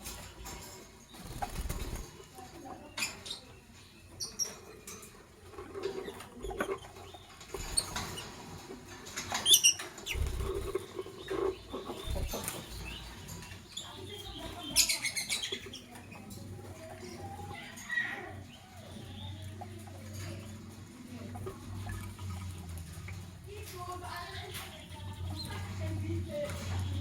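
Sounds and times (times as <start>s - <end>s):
birds scratching and rustling: 0.0s - 27.0s
wing flutters: 1.1s - 2.4s, 7.4s - 13.1s.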